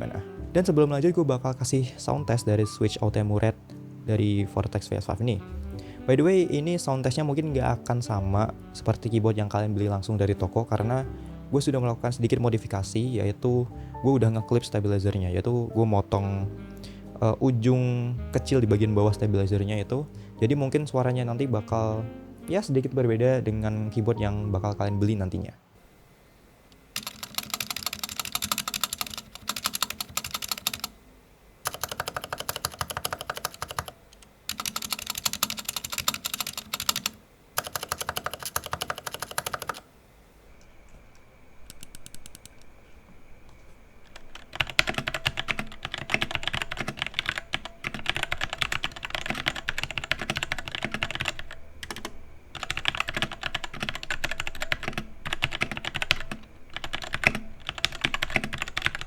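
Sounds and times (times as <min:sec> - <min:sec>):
mechanical keyboard typing: 0:26.9 - 0:31.0, 0:31.7 - 0:39.8, 0:41.7 - 0:42.7, 0:44.1 - 0:59.0.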